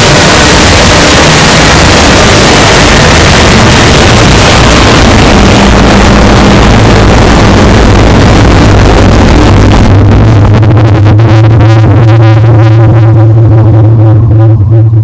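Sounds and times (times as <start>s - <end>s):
rushing hiss noise: 0.0s - 9.9s
low steady hum: 0.0s - 15.0s.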